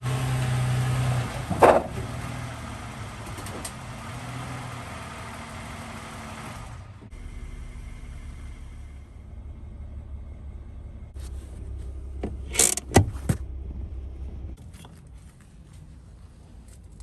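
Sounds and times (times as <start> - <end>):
car engine idling: 0.0 - 15.0
loud short clunk: 1.4 - 2.3.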